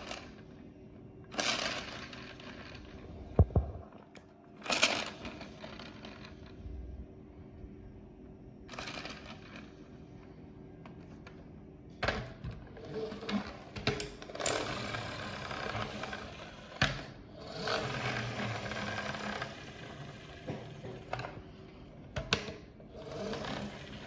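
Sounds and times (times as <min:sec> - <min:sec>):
plastic clicks and knocks: 0:03.4 - 0:03.9.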